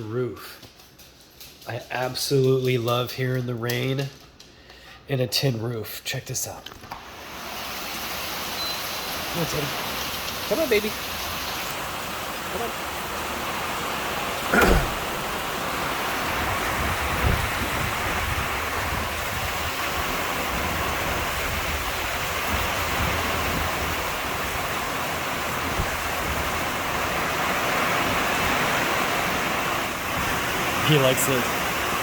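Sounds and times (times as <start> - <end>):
heavy rain on a tin roof: 7.0 - 32.0
loud thump: 14.5 - 15.3.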